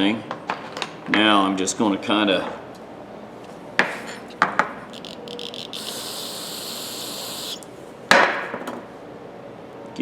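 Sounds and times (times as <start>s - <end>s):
ratchet parts clicking: 4.2s - 7.7s.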